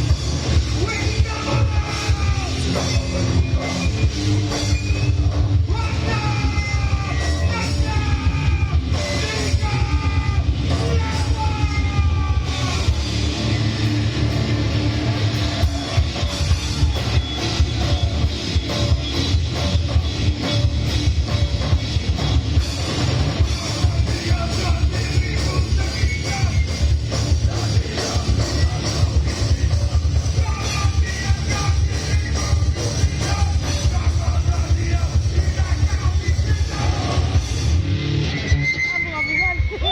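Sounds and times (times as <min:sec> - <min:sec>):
pounding drums: 0:00.0 - 0:38.0
distorted guitars: 0:00.0 - 0:39.9
shouted vocals: 0:00.6 - 0:04.1, 0:05.5 - 0:18.7, 0:23.3 - 0:37.4.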